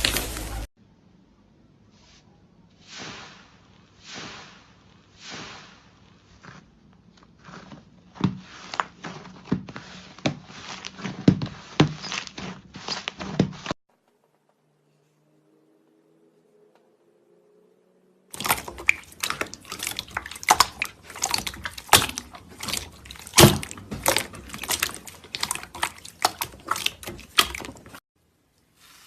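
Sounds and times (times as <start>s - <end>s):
slime squishing: 2.8s - 13.8s, 18.3s - 28.0s.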